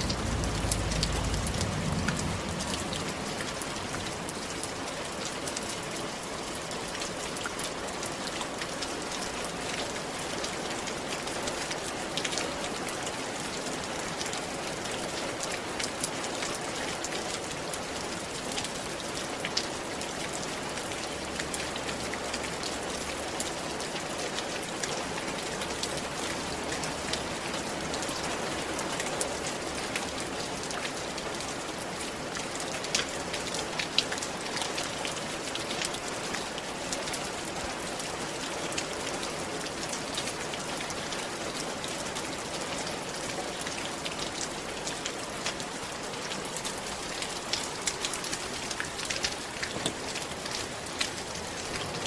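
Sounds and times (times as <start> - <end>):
low rumble: 0.0 - 4.3
rain on a roof: 0.0 - 52.0.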